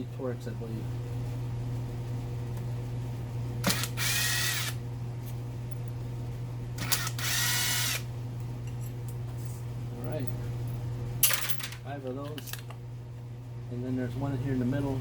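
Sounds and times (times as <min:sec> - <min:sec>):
drill trigger click: 0:03.6 - 0:04.8
power drill whining: 0:03.6 - 0:04.8, 0:06.8 - 0:08.1.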